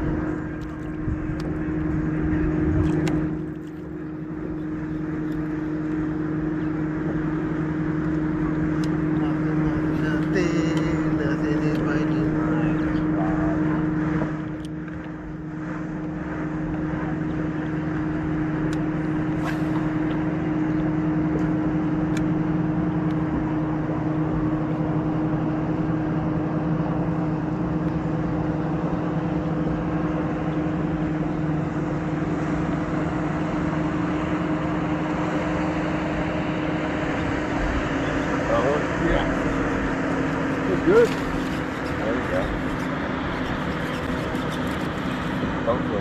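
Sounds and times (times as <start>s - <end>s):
boat motor humming: 0.0s - 46.0s.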